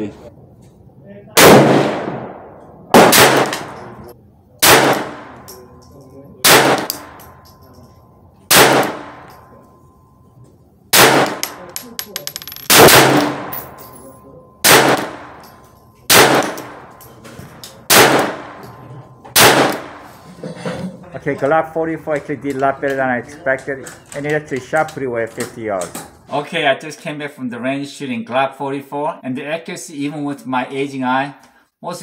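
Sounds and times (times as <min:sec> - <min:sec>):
pistol shots with echo: 0:01.4 - 0:05.7, 0:06.4 - 0:07.4, 0:08.5 - 0:09.4, 0:10.9 - 0:13.8, 0:14.6 - 0:17.0, 0:17.9 - 0:18.7, 0:19.3 - 0:20.1.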